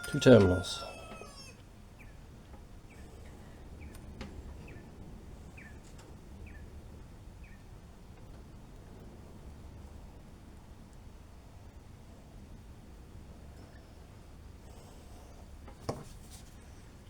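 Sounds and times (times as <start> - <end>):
bird chirping faintly: 0.0 - 2.2.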